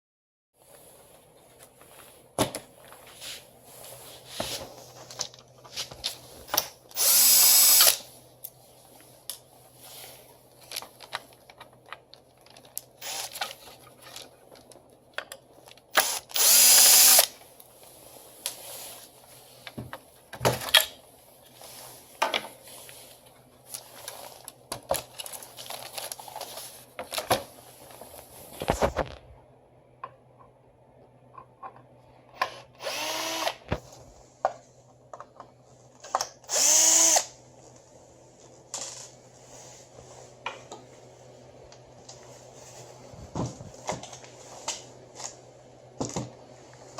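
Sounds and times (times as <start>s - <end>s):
power screwdriver running: 7.0s - 8.0s, 13.0s - 13.4s, 16.0s - 17.3s, 32.8s - 33.6s, 36.5s - 37.3s.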